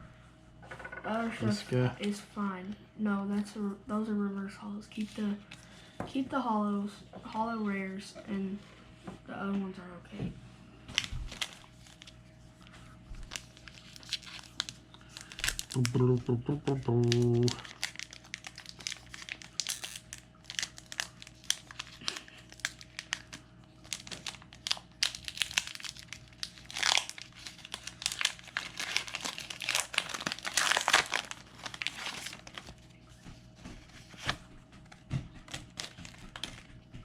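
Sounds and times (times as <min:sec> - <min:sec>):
foil wrapper crinkling and tearing: 0:10.9 - 0:12.3, 0:13.2 - 0:16.2, 0:16.9 - 0:33.0, 0:33.8 - 0:36.7.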